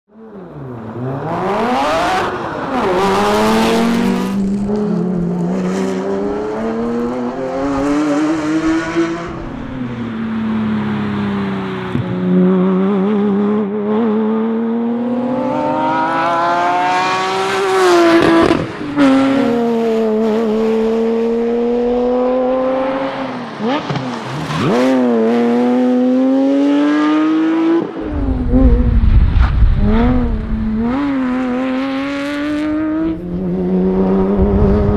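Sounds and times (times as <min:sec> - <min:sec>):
sports car engine accelerating: 0:10.3 - 0:34.9
low rumble: 0:28.0 - 0:34.9.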